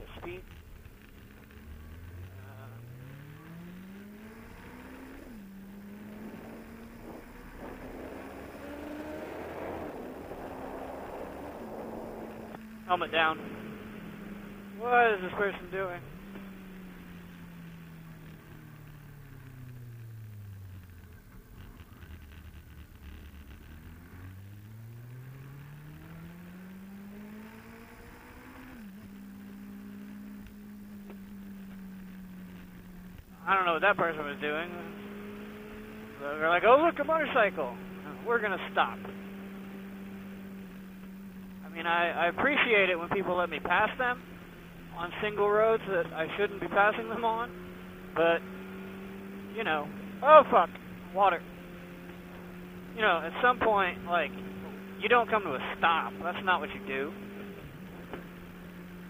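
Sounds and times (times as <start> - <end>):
motorcycle engine accelerating: 0.0 - 59.0
wind noise: 6.2 - 12.6.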